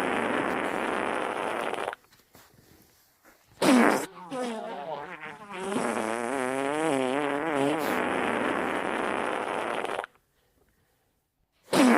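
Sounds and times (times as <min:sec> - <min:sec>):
long wavering fart: 0:00.0 - 0:02.0, 0:03.6 - 0:10.2, 0:11.7 - 0:11.9.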